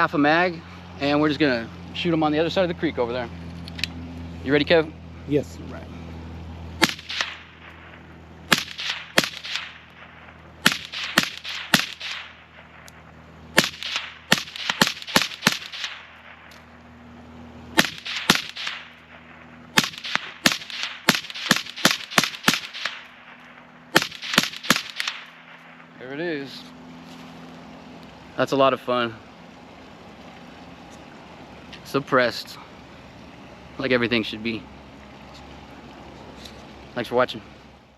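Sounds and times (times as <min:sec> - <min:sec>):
suppressed pistol shots: 0:06.8 - 0:16.7, 0:17.7 - 0:25.9.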